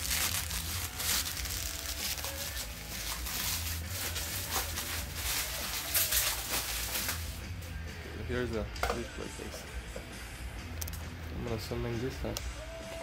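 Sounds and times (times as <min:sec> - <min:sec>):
packaging rustling and clicking: 0:00.0 - 0:07.4.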